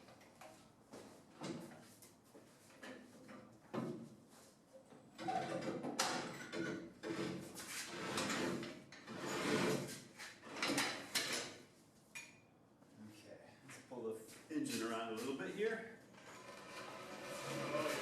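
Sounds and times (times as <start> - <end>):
heavy parts scraping and sliding: 16.2 - 18.0.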